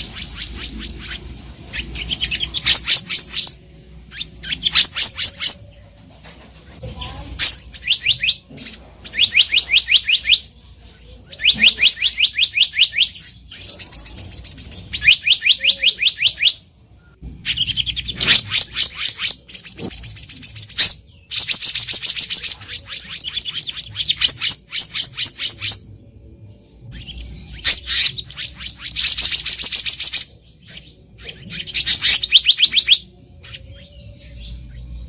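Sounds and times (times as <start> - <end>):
bird calling rapid sharp notes: 31.6 - 33.1.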